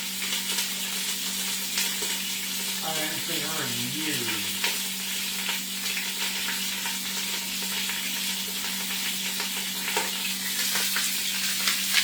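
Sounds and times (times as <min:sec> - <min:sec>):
meat sizzling in oil: 0:00.0 - 0:12.0.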